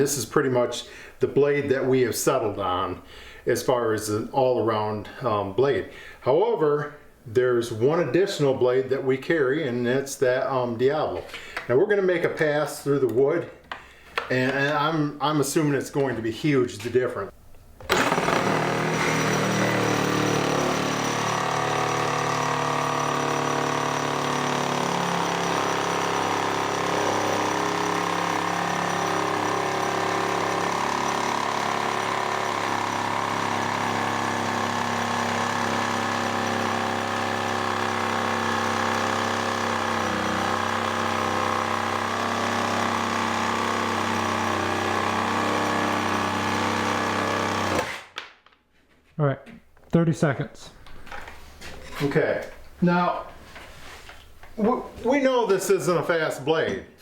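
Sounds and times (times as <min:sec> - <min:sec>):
reciprocating saw cutting wood: 0:17.9 - 0:48.2.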